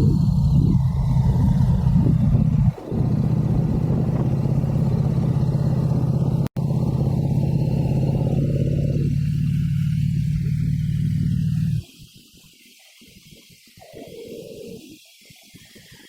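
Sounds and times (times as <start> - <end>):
motorcycle engine running: 0.0 - 11.9.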